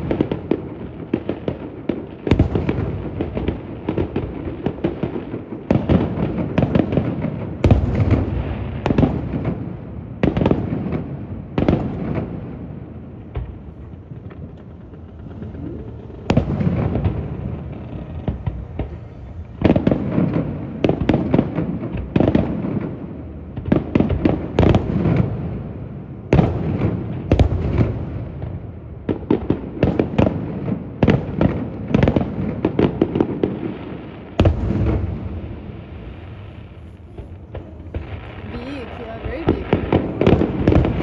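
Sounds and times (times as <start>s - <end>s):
fireworks bursting: 0.0s - 41.0s
rolling rumble of blasts: 2.3s - 25.9s, 34.4s - 41.0s.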